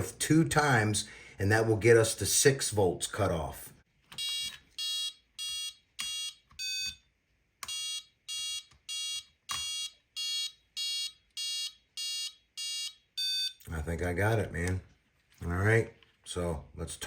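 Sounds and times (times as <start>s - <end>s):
short electronic beeps: 4.3s - 7.0s, 7.7s - 13.6s.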